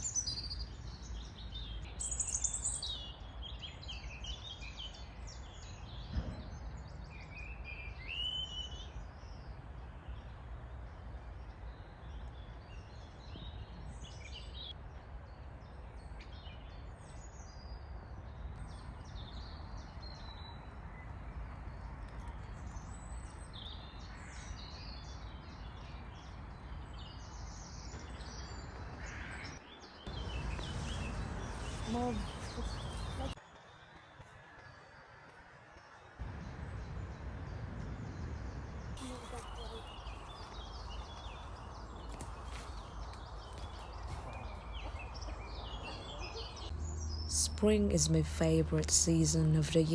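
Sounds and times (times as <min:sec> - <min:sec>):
songbirds singing: 0:00.0 - 0:49.9.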